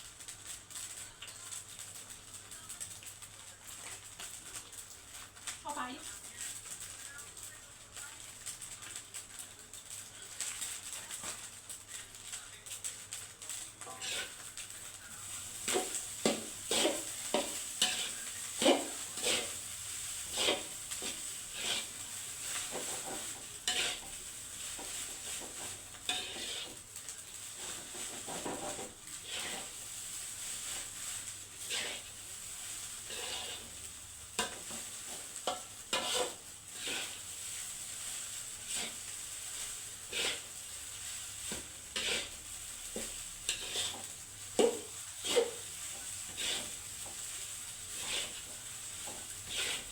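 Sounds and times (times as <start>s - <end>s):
rice sizzling in a pan: 0.0s - 49.9s
spatula scraping a pan: 13.1s - 49.9s.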